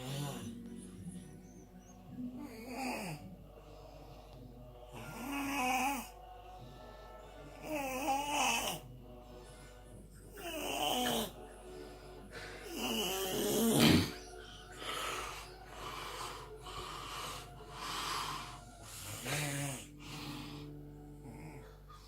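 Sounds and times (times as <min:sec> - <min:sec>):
person snoring heavily: 0:00.0 - 0:00.6, 0:02.4 - 0:03.3, 0:07.6 - 0:08.8, 0:10.4 - 0:11.4, 0:12.6 - 0:21.7.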